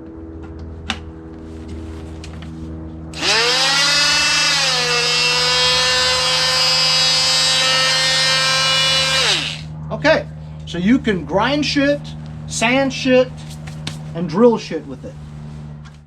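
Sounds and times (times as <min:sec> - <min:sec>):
low hum: 0:00.0 - 0:16.0
oscillating multi-tool whining: 0:03.2 - 0:09.7.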